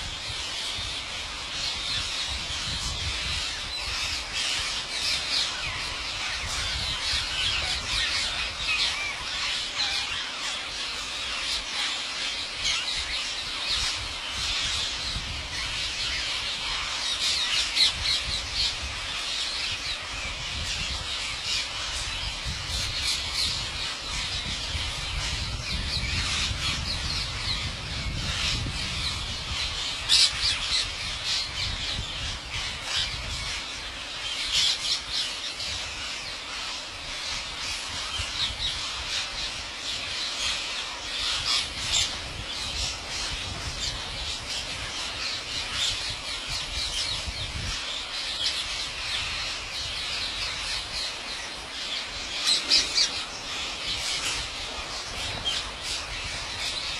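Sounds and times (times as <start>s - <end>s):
parrots squawking and chattering: 40.0s - 56.9s.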